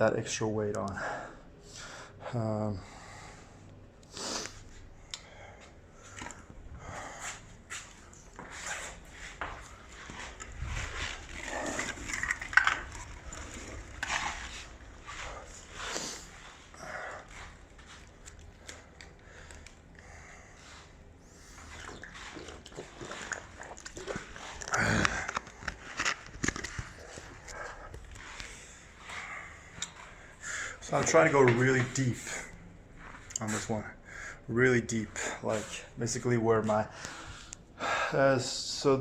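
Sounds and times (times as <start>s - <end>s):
man breathing heavily: 0.9s - 22.4s, 24.0s - 26.0s, 26.6s - 31.0s, 33.9s - 34.5s, 36.8s - 38.3s.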